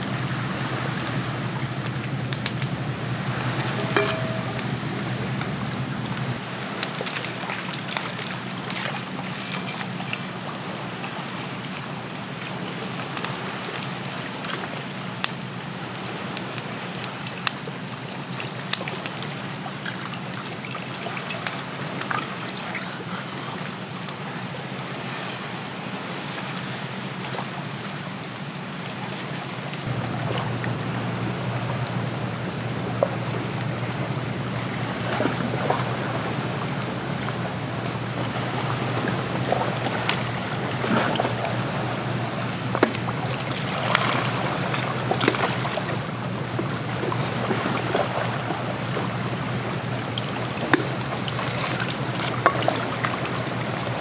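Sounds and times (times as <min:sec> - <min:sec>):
water trickling: 0:00.0 - 0:15.9, 0:29.7 - 0:54.0.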